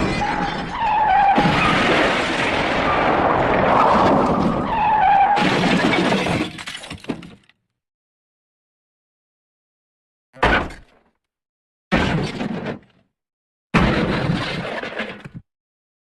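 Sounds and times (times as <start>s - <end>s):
trumpet-like squeal: 0.0s - 1.8s, 4.3s - 5.4s
crashing and shattering: 0.0s - 7.4s.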